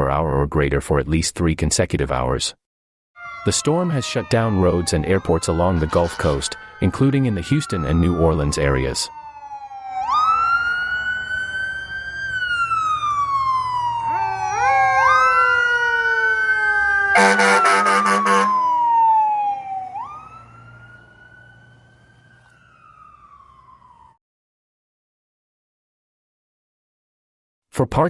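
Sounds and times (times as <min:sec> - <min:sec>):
emergency vehicle sirens wailing: 0:03.2 - 0:24.2
low vehicle rumble: 0:04.3 - 0:24.0
harsh pulsing horn blast: 0:17.1 - 0:18.6.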